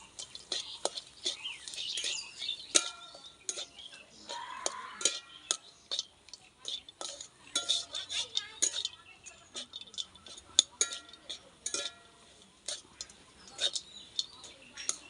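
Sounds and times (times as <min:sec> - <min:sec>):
metal spoon scraping cooking pan: 0:00.0 - 0:15.0.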